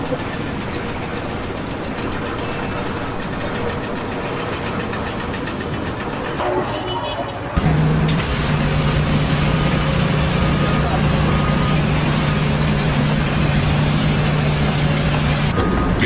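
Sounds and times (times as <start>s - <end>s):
machinery rumble: 0.0s - 16.0s
steady low hum: 6.3s - 15.5s.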